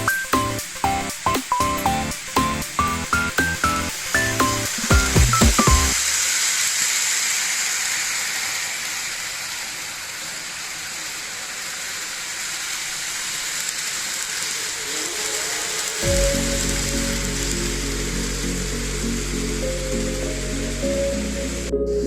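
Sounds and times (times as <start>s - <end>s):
background music: 0.0s - 6.0s, 14.7s - 22.0s
model train rolling on track: 0.0s - 21.7s.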